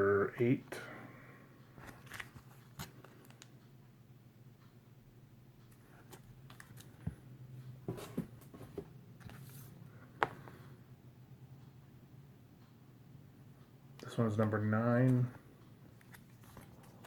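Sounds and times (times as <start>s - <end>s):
paper rustling: 1.8s - 3.4s, 16.0s - 17.0s.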